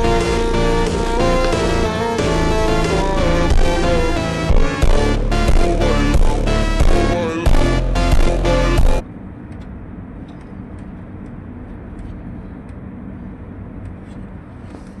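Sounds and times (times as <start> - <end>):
background pop music: 0.0 - 9.0
low machine hum: 0.0 - 14.7.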